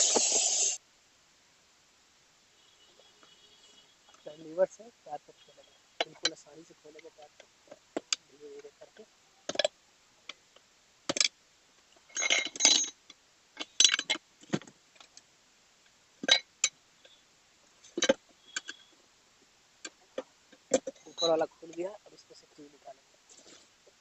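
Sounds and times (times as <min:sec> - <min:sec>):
tyre levers clinking on wheel rim: 0:12.1 - 0:13.0.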